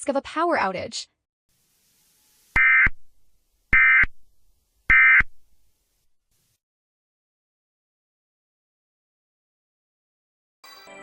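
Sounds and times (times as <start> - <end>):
emergency alert data tones: 2.6 - 3.0, 3.8 - 4.2, 4.9 - 5.4.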